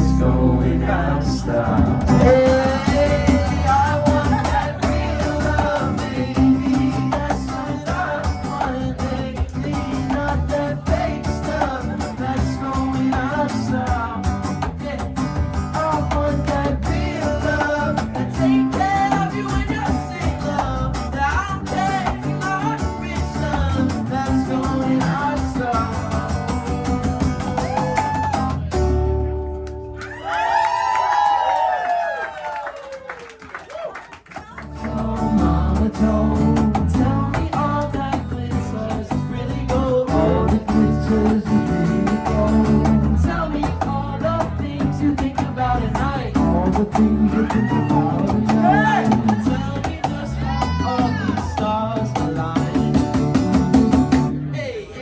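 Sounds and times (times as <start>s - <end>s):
live rock band playing: 1.4s - 30.0s, 34.8s - 54.6s.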